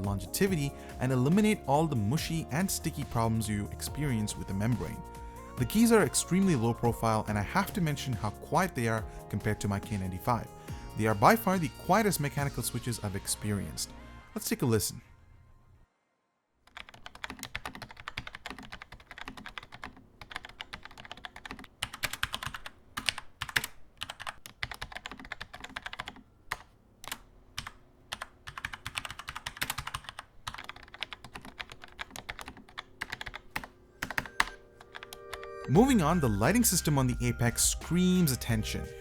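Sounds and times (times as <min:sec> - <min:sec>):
typing on quiet mechanical keyboard: 0:16.7 - 0:35.4.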